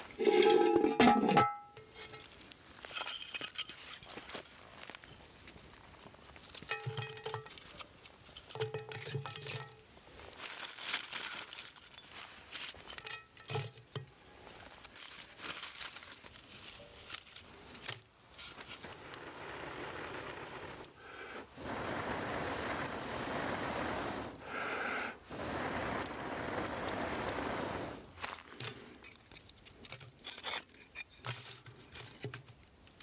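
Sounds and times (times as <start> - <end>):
crackling and crinkling: 0.0 - 33.0
steady hiss: 18.4 - 28.4.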